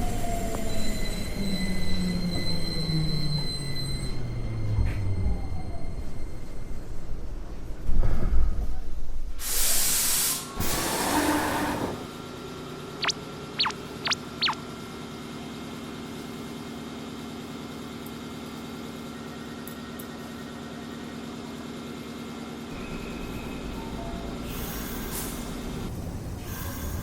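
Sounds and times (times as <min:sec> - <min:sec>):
short high squeaks: 0:13.0 - 0:14.6.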